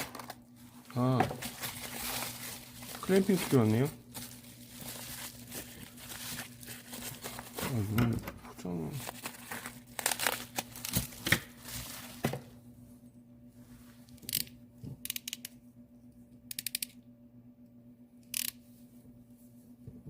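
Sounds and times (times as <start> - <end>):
plastic packaging tearing and crinkling: 0.0 - 7.9, 8.9 - 12.2.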